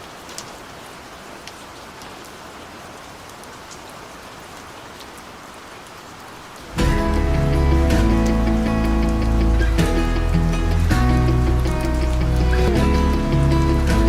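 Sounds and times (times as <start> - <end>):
steady rain hiss: 0.0 - 14.0.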